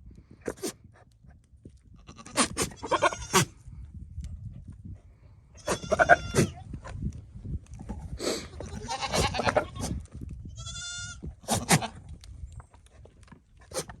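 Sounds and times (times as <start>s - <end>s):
goat buck calling: 2.1s - 3.5s, 5.6s - 6.6s, 8.6s - 10.0s, 10.6s - 12.0s.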